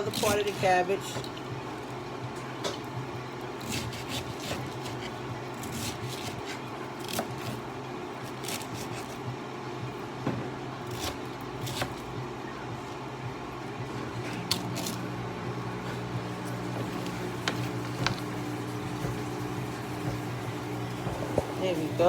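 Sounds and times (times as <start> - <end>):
knife cutting cabbage: 0.0 - 1.4, 3.6 - 9.3, 10.9 - 12.1, 14.1 - 15.0
steady low hum: 0.0 - 22.0.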